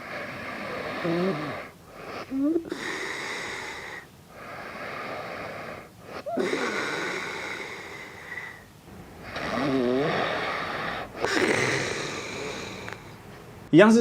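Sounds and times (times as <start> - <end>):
man snoring: 0.0 - 8.6, 9.2 - 13.2.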